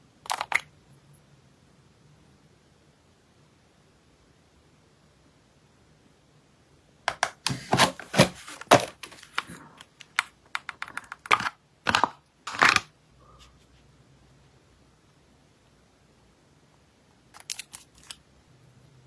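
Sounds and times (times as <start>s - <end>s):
packaging crackling and crinkling: 7.4s - 12.9s, 17.3s - 18.2s
packaging ripping: 17.4s - 18.2s.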